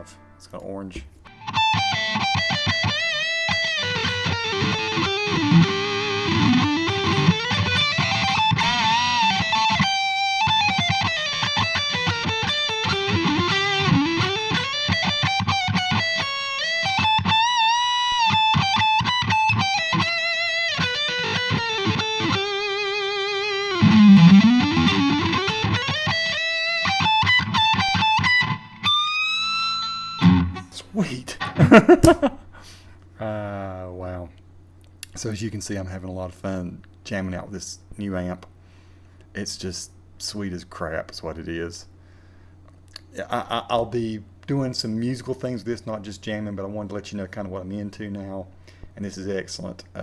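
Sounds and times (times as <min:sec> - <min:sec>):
electric guitar lead with bends: 0:01.3 - 0:30.7.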